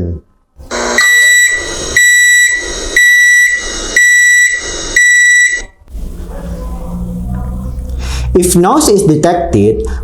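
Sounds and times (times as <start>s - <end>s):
microwave oven beeping: 0.6s - 5.8s.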